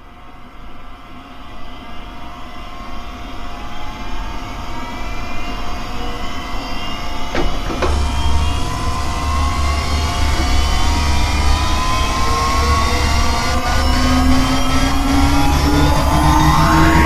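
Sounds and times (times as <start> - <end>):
aircraft engine noise: 6.9 - 17.0
faint rising tones: 7.1 - 17.0.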